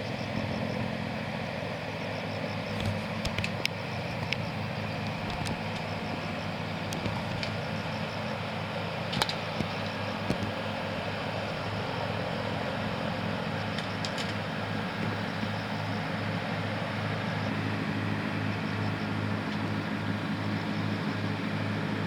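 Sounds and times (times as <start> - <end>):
boat engine running: 0.0 - 22.0
sharp clicks and knocks: 2.8 - 5.9, 9.1 - 10.6, 13.8 - 14.4.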